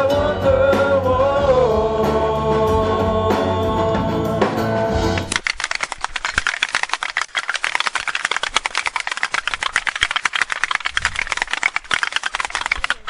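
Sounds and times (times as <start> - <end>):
wooden clappers clattering: 5.2 - 13.0.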